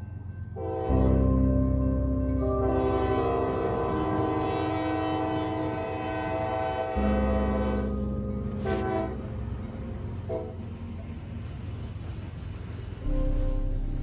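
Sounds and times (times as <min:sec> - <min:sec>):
train rumbling: 0:00.0 - 0:14.0
locomotive air horn blasts: 0:00.6 - 0:01.4, 0:02.4 - 0:09.4, 0:10.2 - 0:10.8.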